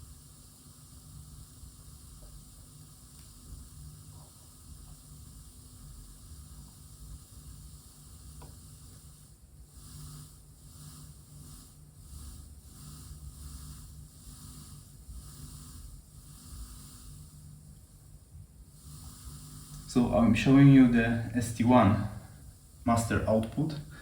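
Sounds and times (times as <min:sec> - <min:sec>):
steady hiss and low hum: 0:00.0 - 0:24.0
short hissy bursts: 0:18.7 - 0:24.0.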